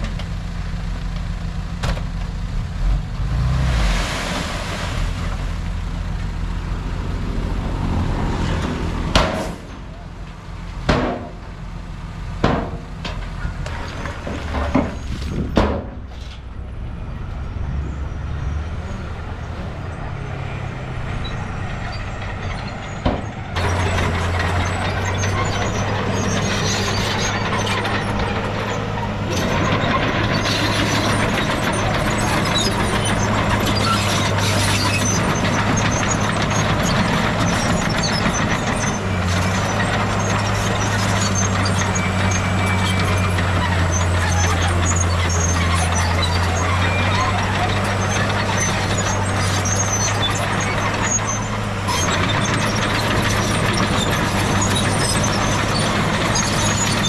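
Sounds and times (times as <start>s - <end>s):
diesel engine running: 0.0s - 57.0s
metal knocks and clanks: 8.5s - 11.6s, 12.4s - 16.5s, 21.1s - 51.4s.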